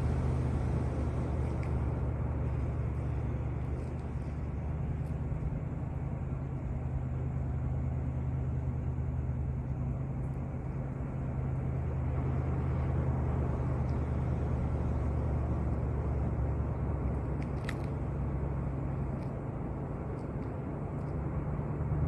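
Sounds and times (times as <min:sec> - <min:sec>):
rushing noise: 0:00.0 - 0:02.0
vehicle engine humming: 0:00.0 - 0:22.0.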